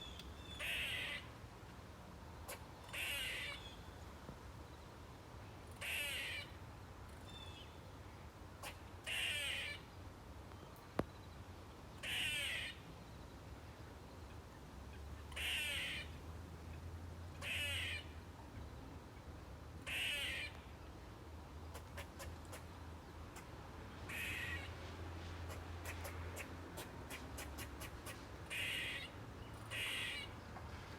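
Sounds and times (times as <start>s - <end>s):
squirrel screeching: 0.4s - 1.3s, 2.5s - 3.8s, 5.8s - 6.6s, 8.6s - 9.8s, 12.0s - 12.8s, 15.3s - 16.2s, 17.4s - 18.1s, 19.9s - 20.6s, 24.1s - 24.7s, 25.5s - 30.3s.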